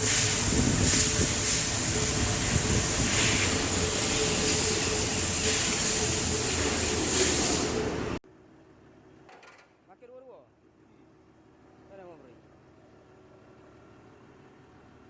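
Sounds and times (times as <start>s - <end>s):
workshop machine hissing with whine: 0.0s - 8.2s.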